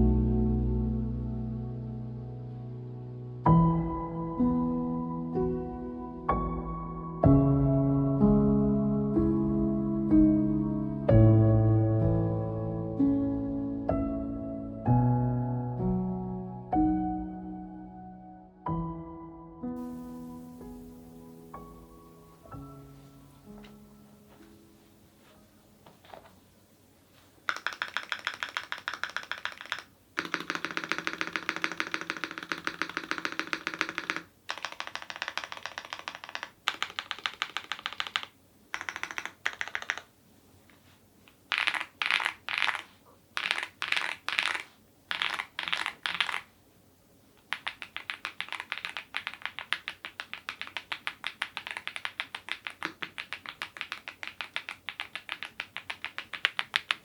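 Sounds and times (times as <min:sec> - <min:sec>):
fast typing on mechanical keyboard: 0:27.5 - 0:40.1, 0:41.5 - 0:46.5, 0:47.4 - 0:57.0.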